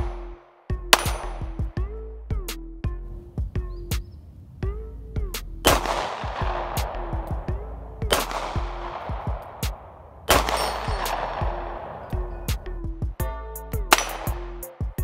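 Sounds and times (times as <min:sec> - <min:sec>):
pistol shots echoing: 0:00.0 - 0:01.6, 0:05.6 - 0:12.6, 0:13.9 - 0:15.0
background music: 0:00.0 - 0:04.0, 0:04.6 - 0:15.0.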